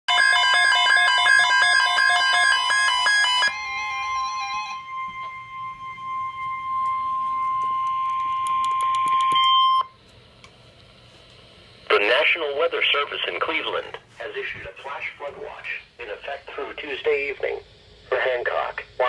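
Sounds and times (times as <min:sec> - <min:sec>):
warbling digital header bursts: 0:00.1 - 0:04.6
steady attention tone: 0:00.1 - 0:10.0
faint radio hiss: 0:10.2 - 0:19.0.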